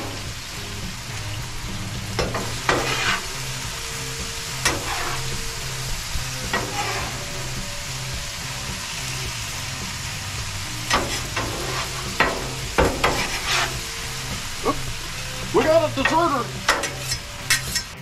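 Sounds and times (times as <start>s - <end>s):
meat sizzling on a griddle: 0.0s - 18.0s
spatula scraping a griddle: 2.1s - 18.0s.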